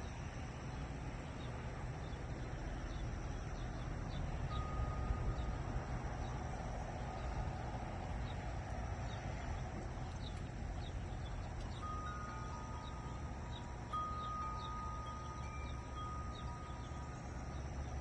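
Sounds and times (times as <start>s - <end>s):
insects trilling: 0.0s - 18.0s
low rumble and hiss: 0.0s - 18.0s
wind chime note: 4.5s - 6.0s, 11.8s - 17.9s
bird chirps: 10.0s - 18.0s.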